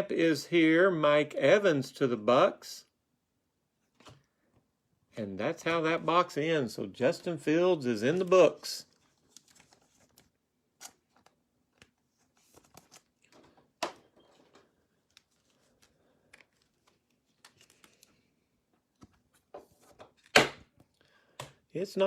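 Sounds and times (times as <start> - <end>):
trading cards clicking and rustling: 8.9 - 18.3.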